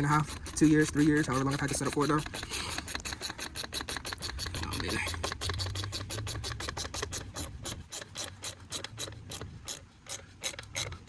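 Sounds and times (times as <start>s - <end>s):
socket ratchet clicking: 0.0s - 11.0s.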